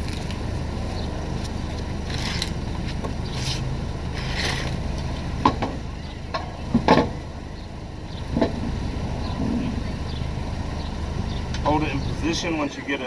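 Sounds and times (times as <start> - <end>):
low vehicle rumble: 0.0 - 13.0
tire scraping: 0.0 - 13.0
sharp metal clunks: 5.4 - 7.3.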